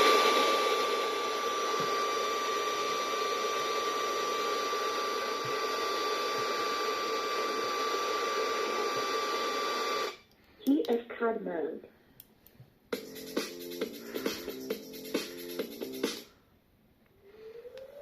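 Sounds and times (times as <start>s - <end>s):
thin steady whine: 0.0s - 10.3s.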